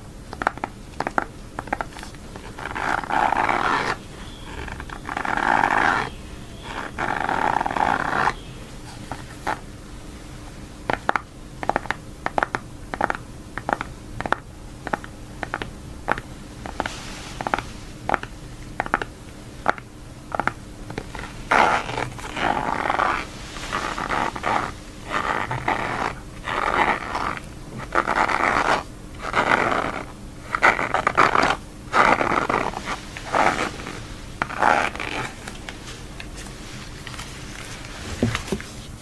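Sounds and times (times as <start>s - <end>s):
noisy scuffing: 16.7s - 17.9s, 32.0s - 39.0s.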